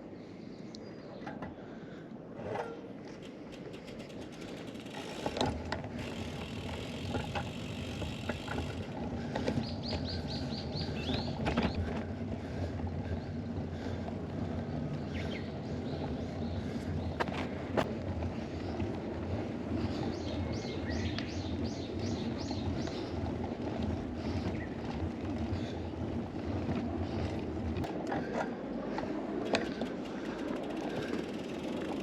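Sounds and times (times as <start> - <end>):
road and wind rumble: 0.9 - 32.0
drivetrain clicks: 3.1 - 10.2, 28.9 - 32.0
bicycle freewheel ticking: 3.2 - 9.0, 29.4 - 32.0.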